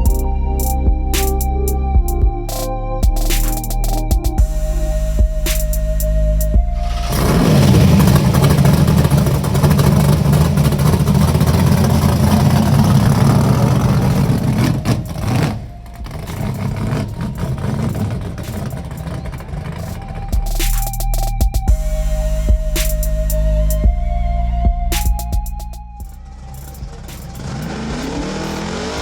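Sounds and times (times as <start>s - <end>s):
drag race cars at full throttle: 6.8s - 20.6s, 26.2s - 29.0s.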